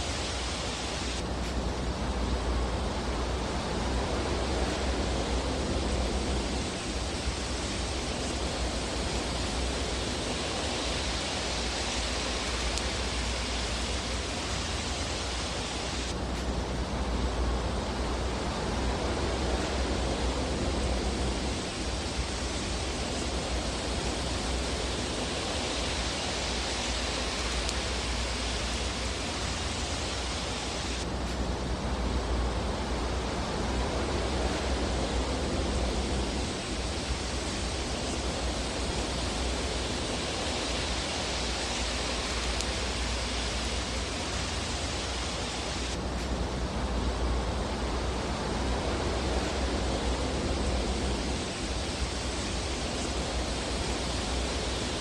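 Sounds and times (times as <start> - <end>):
fire rushing hiss: 0.0 - 55.0.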